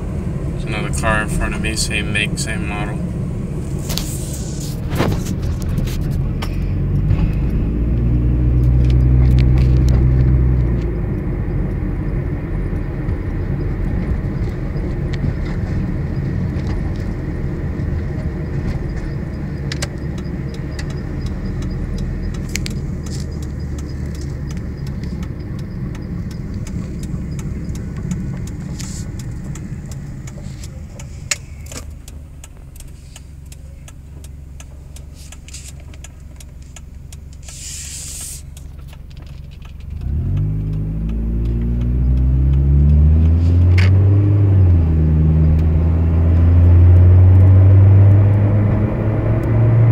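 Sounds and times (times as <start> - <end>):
car engine and road noise: 0.0 - 49.9
small rattles and clicks: 18.0 - 42.0.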